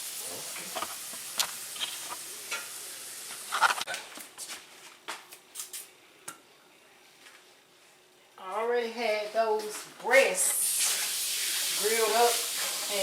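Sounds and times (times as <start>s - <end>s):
potato wedges sizzling: 0.0s - 3.8s, 10.2s - 13.0s.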